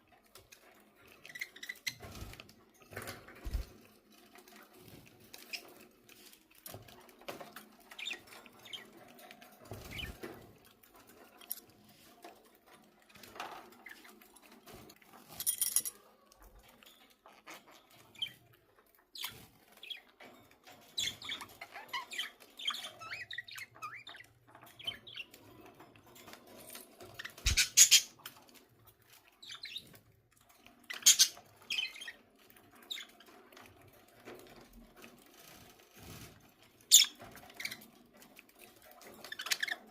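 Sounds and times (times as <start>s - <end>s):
budgerigars chirping: 27.4s - 28.1s.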